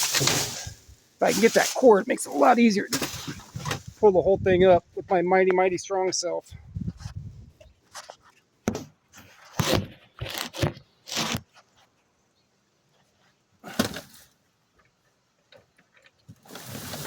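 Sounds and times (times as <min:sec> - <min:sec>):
junk scraping and knocking: 0:00.0 - 0:04.5.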